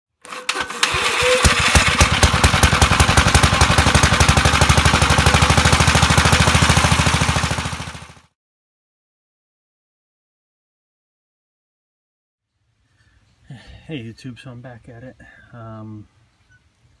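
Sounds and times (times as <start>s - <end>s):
tractor engine running: 0.2s - 8.3s.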